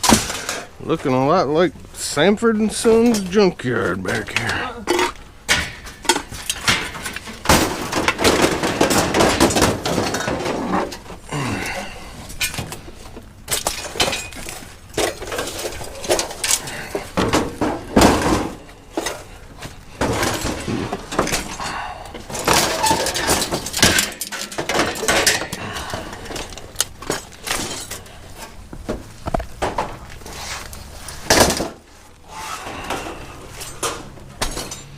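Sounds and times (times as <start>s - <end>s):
scrap metal clanking and crashing: 0.0s - 1.4s, 2.2s - 34.9s.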